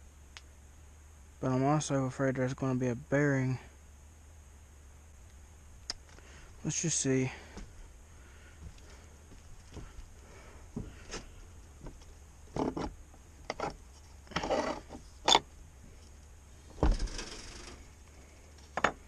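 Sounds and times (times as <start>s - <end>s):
tool scraping: 13.5s - 15.4s.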